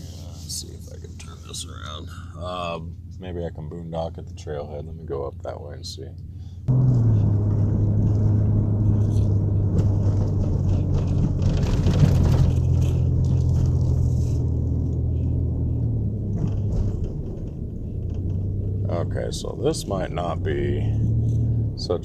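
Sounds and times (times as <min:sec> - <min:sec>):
van engine humming: 0:06.2 - 0:22.0.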